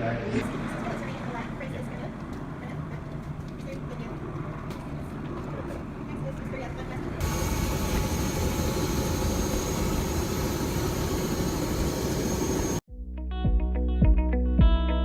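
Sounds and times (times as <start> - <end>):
helicopter turbine and rotor: 5.8 - 12.8.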